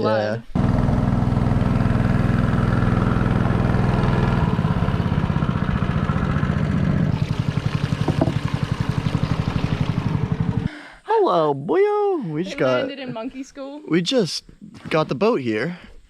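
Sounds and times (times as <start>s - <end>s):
outboard motor running: 0.6s - 10.7s.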